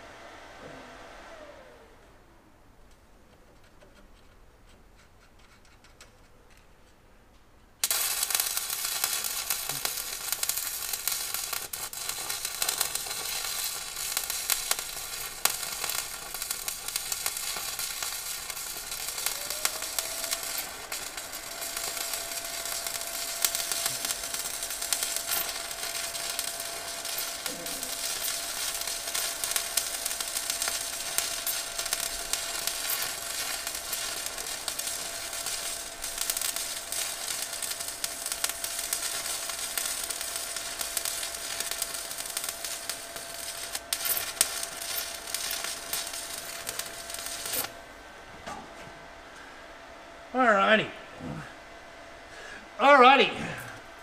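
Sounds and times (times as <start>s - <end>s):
faint steady whine: 0.0s - 4.8s, 6.5s - 54.0s
arc welding crackling: 7.8s - 48.2s, 52.8s - 54.0s.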